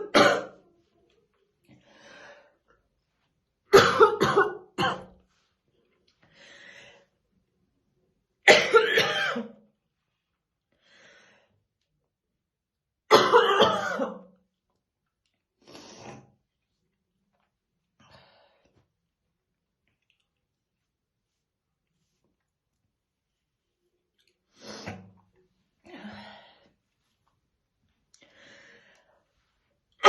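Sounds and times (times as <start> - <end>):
woman coughing: 0.0 - 0.6, 3.7 - 5.1, 8.5 - 9.6, 13.1 - 14.3.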